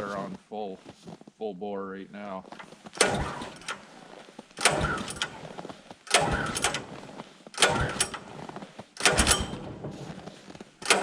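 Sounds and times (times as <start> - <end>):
small engine pull-start cranking: 4.6 - 5.4, 6.1 - 6.9, 7.6 - 8.2, 9.0 - 9.7.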